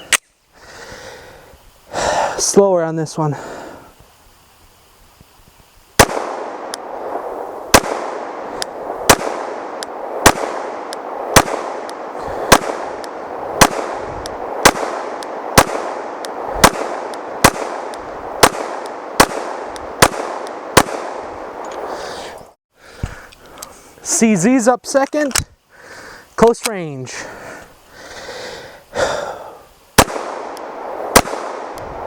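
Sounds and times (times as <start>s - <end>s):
pistol shots: 6.0s - 6.8s, 7.7s - 21.3s, 30.0s - 31.8s.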